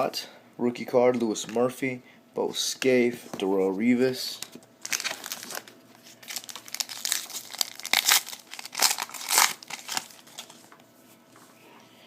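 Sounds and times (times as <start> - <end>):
cards and foil wrapper crinkling: 4.3 - 10.7.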